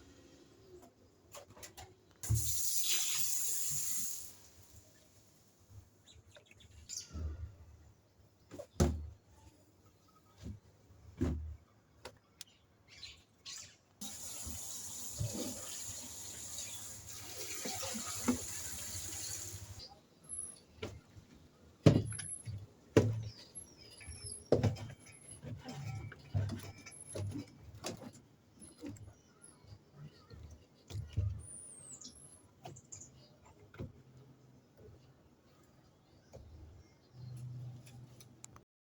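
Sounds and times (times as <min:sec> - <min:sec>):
knocks and clunks from handling: 0:10.4 - 0:12.2, 0:20.8 - 0:29.3.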